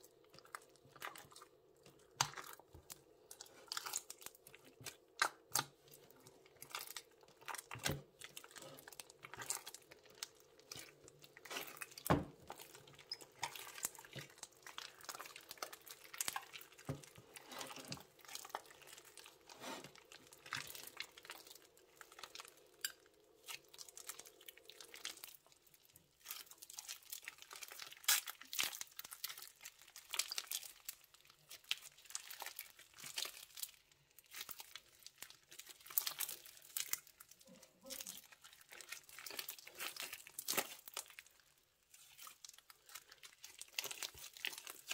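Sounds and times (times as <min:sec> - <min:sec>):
plastic bags crinkling: 0:00.0 - 0:25.6, 0:26.3 - 0:44.9.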